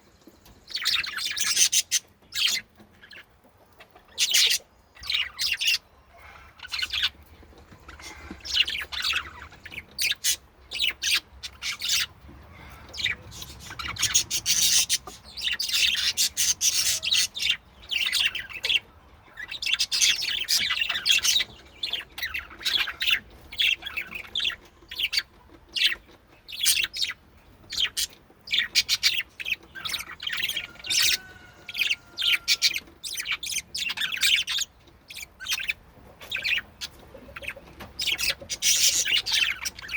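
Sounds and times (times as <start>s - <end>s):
budgies chirping and warbling: 0.0s - 39.9s.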